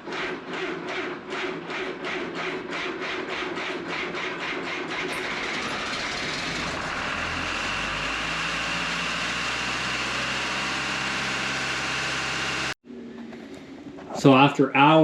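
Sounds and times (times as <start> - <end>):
air compressor diesel engine running: 5.0 - 12.8.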